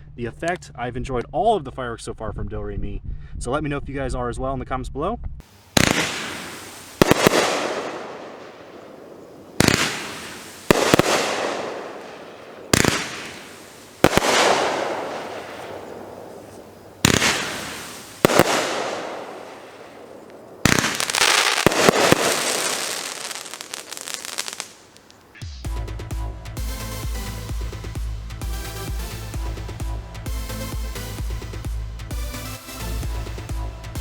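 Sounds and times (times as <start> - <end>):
firework launch reports: 5.4 - 25.3
rush of firework breaks: 5.4 - 25.4
rapid firework pops and crackles: 5.7 - 25.3.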